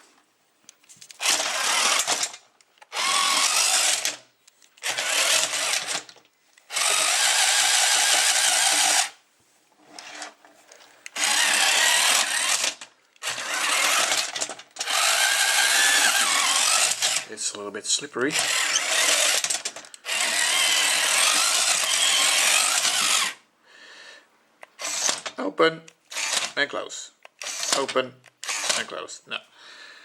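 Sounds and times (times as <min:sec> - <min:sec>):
toy motor and gears whirring: 0:01.1 - 0:09.2, 0:09.9 - 0:10.4, 0:11.0 - 0:17.3, 0:18.2 - 0:23.4, 0:24.8 - 0:25.4, 0:26.1 - 0:26.6, 0:27.4 - 0:29.0.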